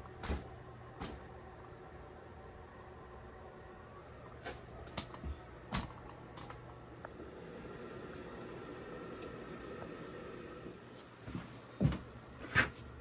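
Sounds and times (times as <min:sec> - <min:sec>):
faint steady hum: 0:00.0 - 0:13.0.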